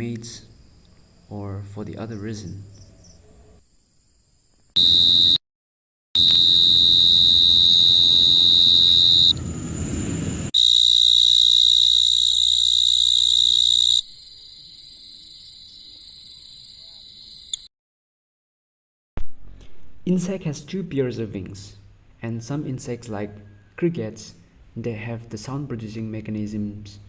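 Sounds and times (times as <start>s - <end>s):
cricket trilling: 0.0s - 5.4s, 6.2s - 9.4s, 10.6s - 17.7s.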